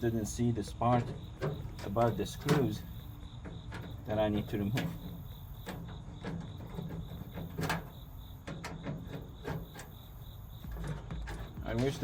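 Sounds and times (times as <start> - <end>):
tools knocking on metal cabinet: 10.6 - 12.0.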